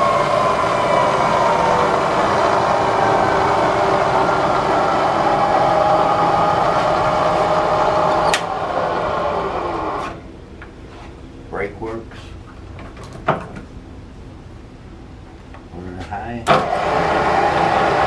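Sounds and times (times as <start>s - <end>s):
milling machine motor whine: 0.0s - 10.3s, 16.5s - 18.0s.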